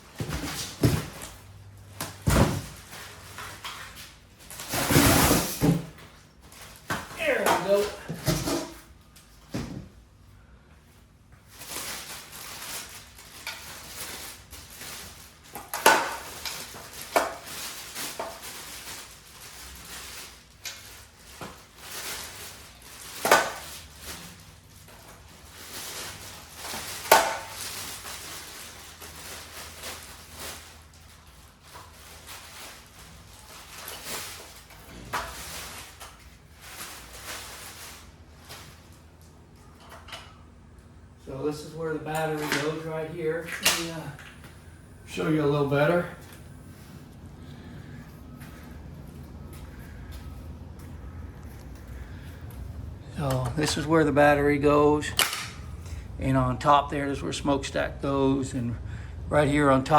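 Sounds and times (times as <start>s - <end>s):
packaging rustling: 11.5s - 39.1s.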